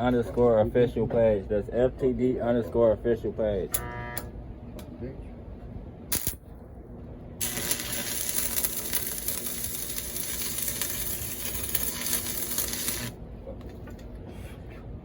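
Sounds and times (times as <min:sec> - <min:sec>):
welding arc crackling and hissing: 0:06.1 - 0:06.4, 0:07.4 - 0:13.2.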